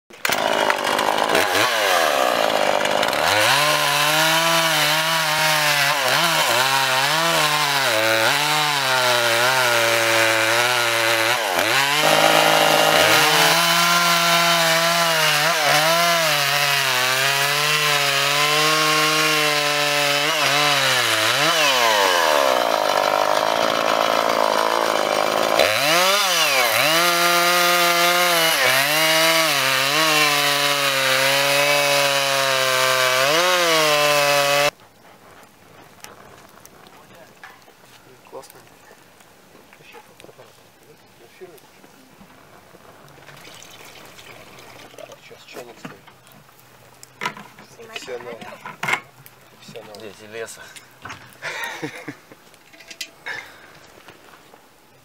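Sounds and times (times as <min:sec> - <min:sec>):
chainsaw cutting log: 0:00.1 - 0:34.8.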